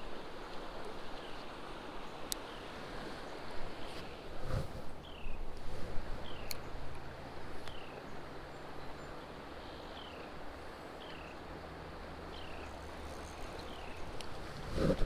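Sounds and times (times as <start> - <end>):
stream running water: 0.0 - 15.0
bird chirping: 12.3 - 14.2.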